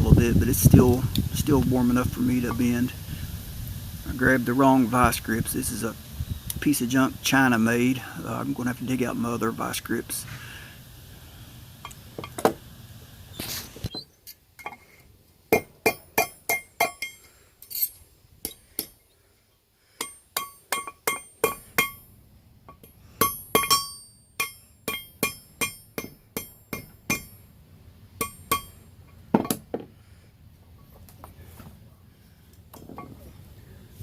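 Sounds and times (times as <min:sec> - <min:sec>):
hammer ringing on anvil: 0:23.2 - 0:27.4, 0:28.2 - 0:28.8.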